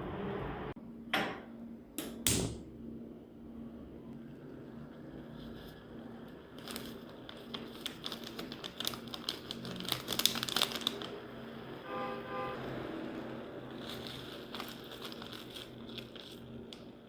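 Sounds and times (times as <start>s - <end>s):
plastic packaging crinkling: 5.8s - 11.8s, 12.6s - 17.0s.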